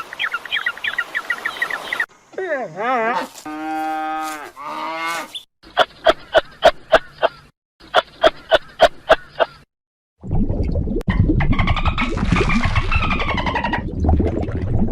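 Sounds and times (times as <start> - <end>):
cow mooing: 2.8 - 5.3.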